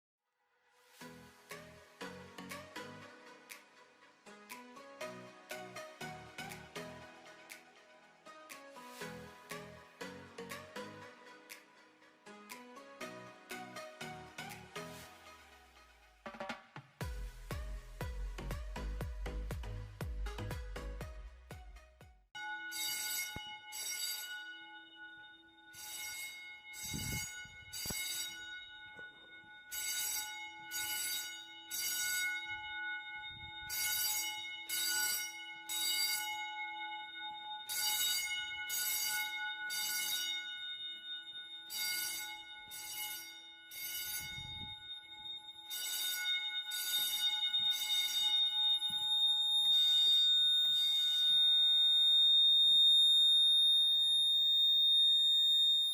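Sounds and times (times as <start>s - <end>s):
fire alarm bell ringing: 22.4s - 55.9s
steady high tone: 22.4s - 55.9s.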